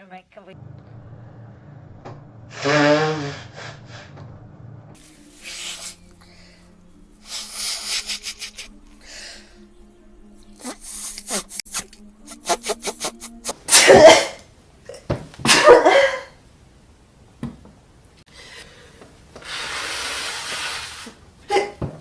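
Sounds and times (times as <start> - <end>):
nose blowing into tissue: 2.5 - 4.0, 5.0 - 6.6, 7.2 - 8.7, 10.6 - 14.2, 19.4 - 21.2.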